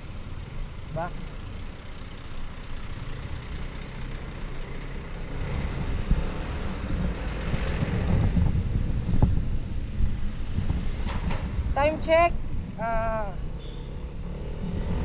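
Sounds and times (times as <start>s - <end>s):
wind rumbling on microphone: 5.4s - 13.5s.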